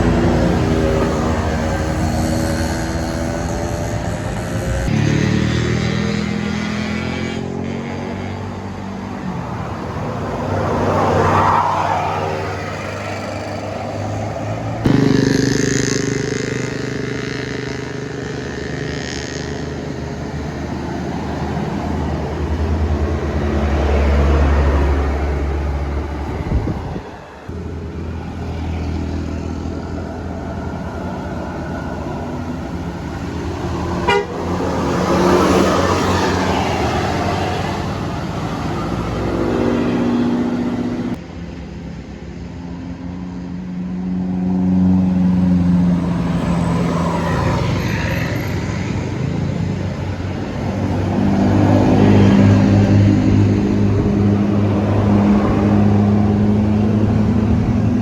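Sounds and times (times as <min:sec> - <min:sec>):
multi-tone musical bus horns: 0:00.0 - 0:08.6, 0:33.6 - 0:37.5
bus engines rumbling: 0:00.0 - 0:58.0.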